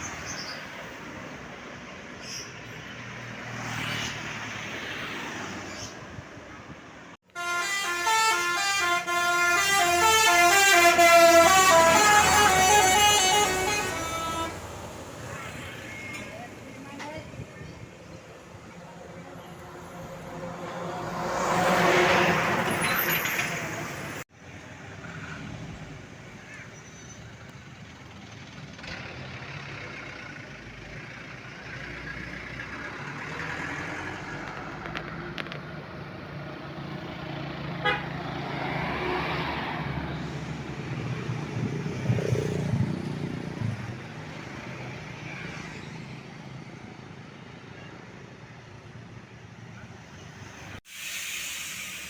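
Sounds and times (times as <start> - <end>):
bus passing: 0.0 - 52.0
road traffic: 0.0 - 52.0
vehicle horn toots: 7.3 - 14.6, 37.8 - 38.2.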